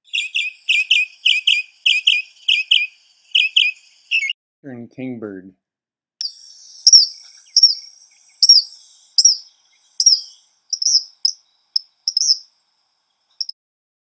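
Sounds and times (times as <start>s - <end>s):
bird calling sharp notes: 0.1s - 4.4s, 6.2s - 12.4s.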